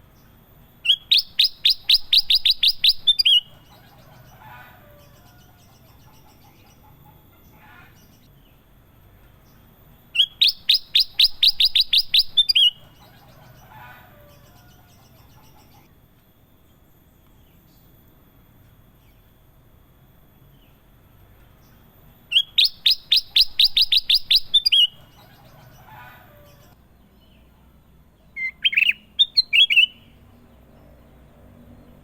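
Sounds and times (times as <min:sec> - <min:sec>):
faint lower bird chirps: 0:00.0 - 0:08.7, 0:09.3 - 0:27.6, 0:28.2 - 0:32.0
bulbul whistled song bursts: 0:00.9 - 0:03.5, 0:10.2 - 0:12.8, 0:22.3 - 0:25.0, 0:28.4 - 0:30.1.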